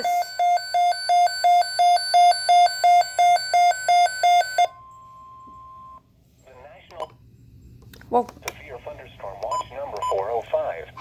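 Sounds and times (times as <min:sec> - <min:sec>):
steady single alarm tone: 0:00.0 - 0:06.1.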